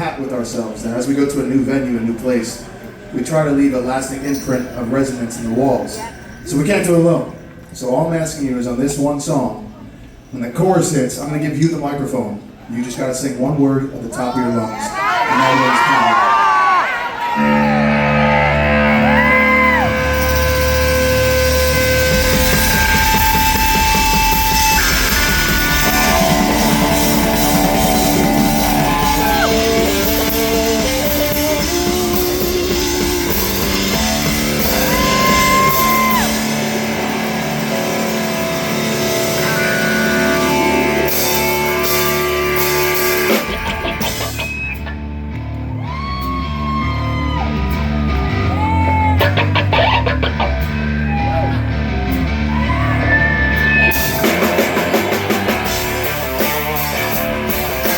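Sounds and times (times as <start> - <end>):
live rock band playing: 17.3 - 57.9.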